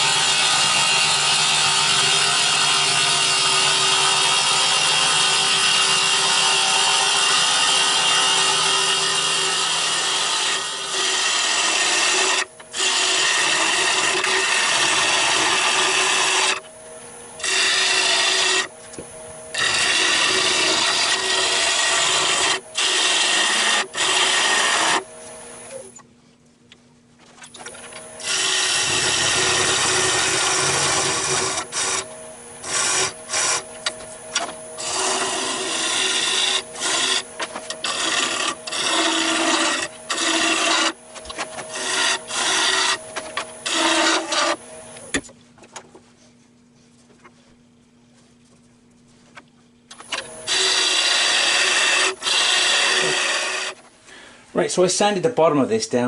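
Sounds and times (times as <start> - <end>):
tool scraping wood on lathe: 0.0 - 16.6, 17.4 - 18.7, 19.5 - 25.1, 27.8 - 44.6, 50.0 - 53.9
lathe humming: 0.0 - 25.8, 27.8 - 45.2, 49.9 - 53.9.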